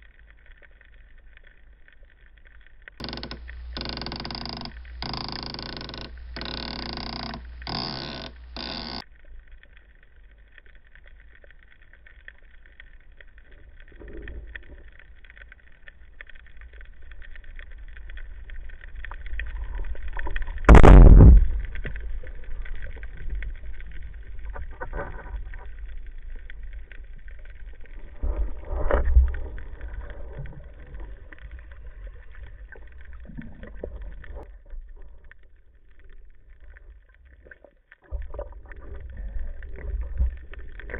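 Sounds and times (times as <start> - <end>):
underwater rumble: 0.0 - 40.9
small knocks: 3.0 - 9.0.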